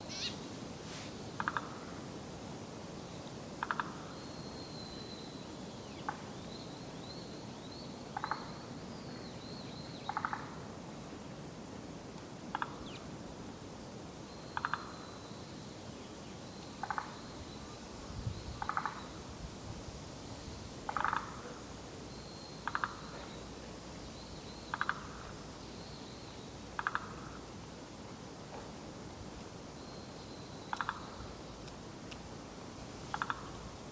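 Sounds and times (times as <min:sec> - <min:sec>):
frog rattling call: 0:00.1 - 0:00.4, 0:01.4 - 0:01.8, 0:03.6 - 0:04.1, 0:10.1 - 0:10.6, 0:14.6 - 0:15.0, 0:16.8 - 0:17.2, 0:18.6 - 0:19.2, 0:20.9 - 0:21.4, 0:22.6 - 0:23.2, 0:24.6 - 0:25.3, 0:26.8 - 0:27.4, 0:30.7 - 0:31.3, 0:33.1 - 0:33.7.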